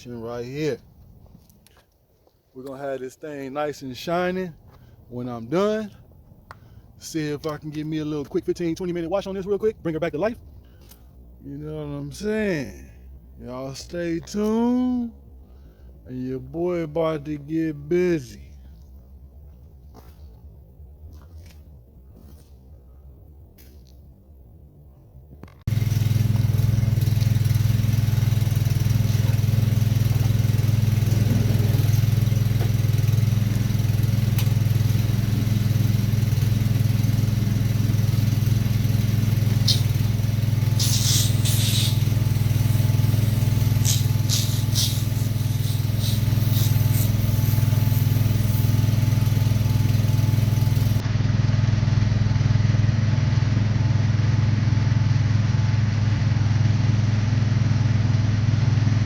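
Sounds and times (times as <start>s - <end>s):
motor running with low drone: 25.4s - 59.0s
short high hissing bursts: 38.8s - 51.0s.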